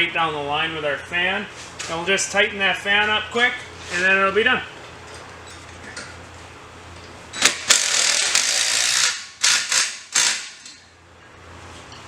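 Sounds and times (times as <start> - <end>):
impact driver rattling: 7.4 - 10.6.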